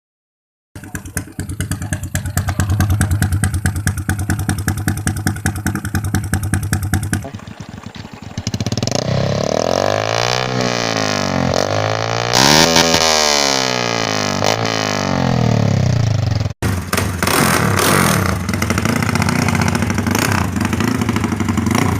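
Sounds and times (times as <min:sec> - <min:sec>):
motorcycle exhaust pulses: 0:00.8 - 0:21.9
engine revving: 0:01.0 - 0:21.9.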